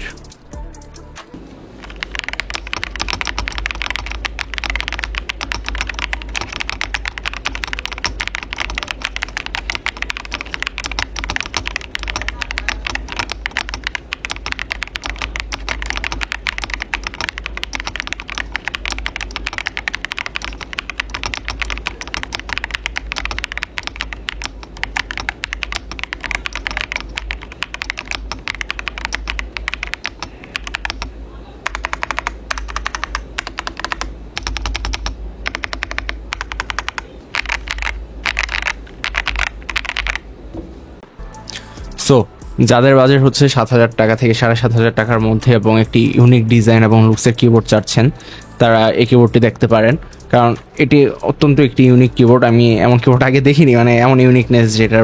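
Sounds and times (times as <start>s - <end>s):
mechanical keyboard typing: 1.8s - 40.3s.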